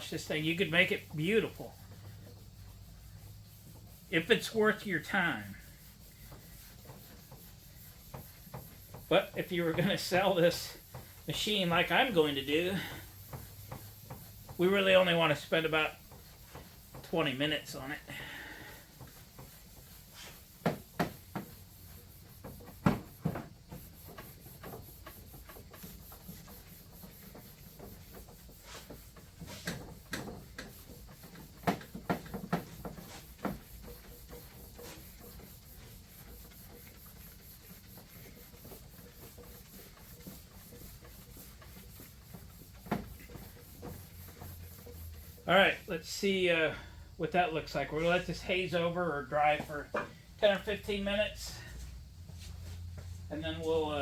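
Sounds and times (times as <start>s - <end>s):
sharp knocks and scrapes: 0.0s - 46.6s, 47.6s - 54.0s
wet sponge rubbing: 0.0s - 54.0s.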